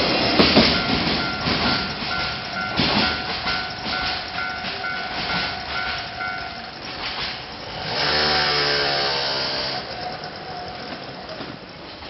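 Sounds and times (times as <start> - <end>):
steady hum with pitched tone: 0.0 - 11.8
level crossing alarm ringing: 0.0 - 12.0.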